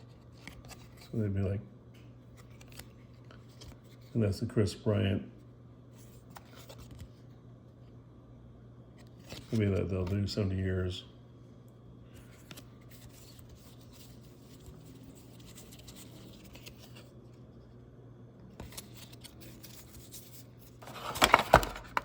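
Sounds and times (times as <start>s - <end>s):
steady low hum: 0.0s - 22.0s
trading cards being flipped: 0.2s - 1.1s, 2.3s - 4.0s, 6.0s - 7.2s, 12.2s - 17.1s, 18.6s - 22.0s.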